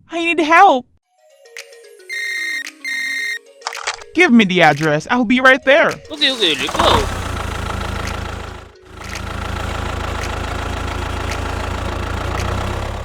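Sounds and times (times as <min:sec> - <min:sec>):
vehicle engine rumbling: 0:06.0 - 0:13.0.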